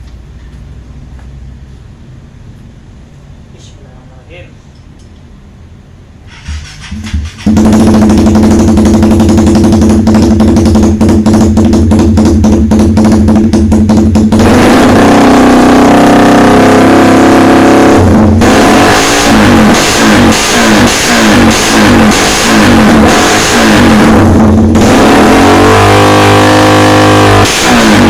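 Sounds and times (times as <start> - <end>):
motorcycle engine revving: 6.3 - 28.0.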